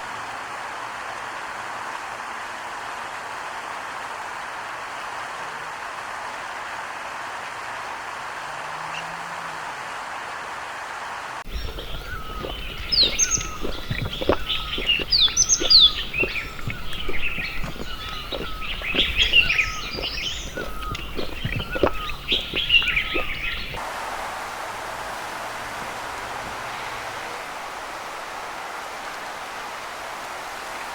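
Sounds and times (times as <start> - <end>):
steady hiss like rain: 0.0 - 17.3, 22.1 - 30.9
many birds chirping and whistling: 11.5 - 23.8.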